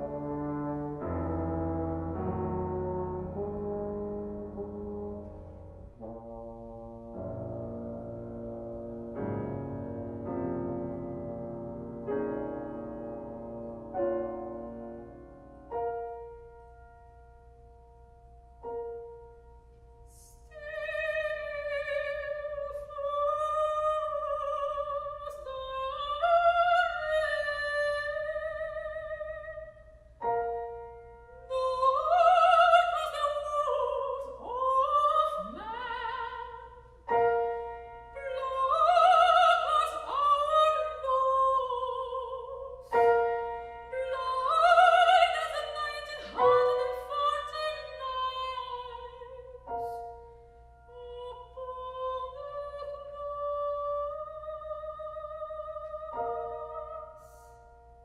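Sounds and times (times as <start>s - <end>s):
piano chords: 0.0s - 58.0s
soprano singing with vibrato: 20.1s - 50.2s, 50.9s - 57.5s.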